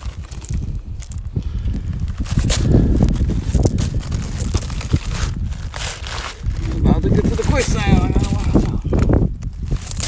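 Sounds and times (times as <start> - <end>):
steady low rumble: 0.0 - 9.6
footsteps crunching on gravel: 3.3 - 8.9
stones knocking: 5.6 - 9.2.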